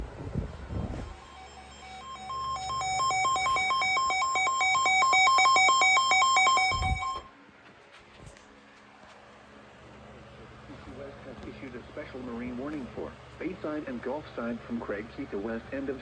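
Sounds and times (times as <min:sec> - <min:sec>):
two-pitch electronic beeping: 0:01.2 - 0:07.3.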